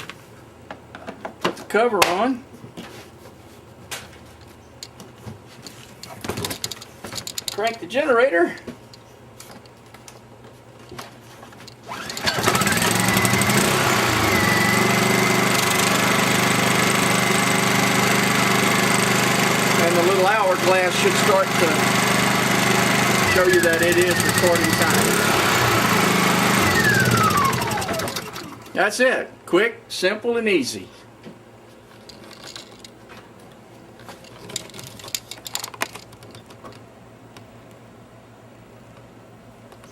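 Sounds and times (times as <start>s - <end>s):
generator engine starting and running: 11.8s - 29.0s.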